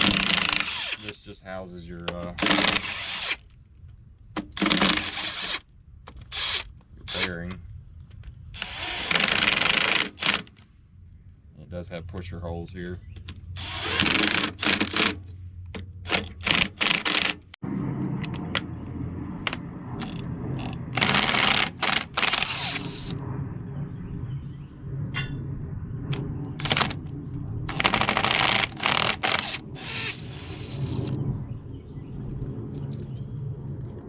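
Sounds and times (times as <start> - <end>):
steady low hum: 10.1 - 34.0.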